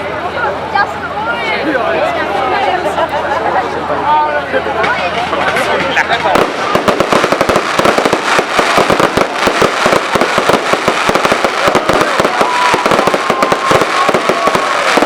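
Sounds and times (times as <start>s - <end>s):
fireworks bangs and crackling: 4.8s - 15.0s.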